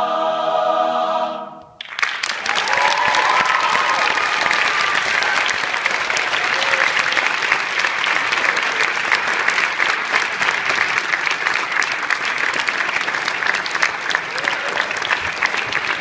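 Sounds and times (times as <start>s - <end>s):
a cappella singing: 0.0s - 1.7s
audience applauding: 1.8s - 16.0s.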